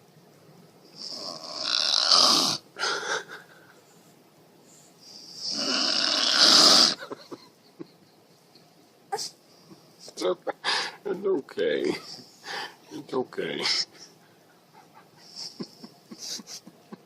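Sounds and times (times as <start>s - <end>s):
woman snoring loudly: 1.0s - 2.6s, 5.4s - 7.0s.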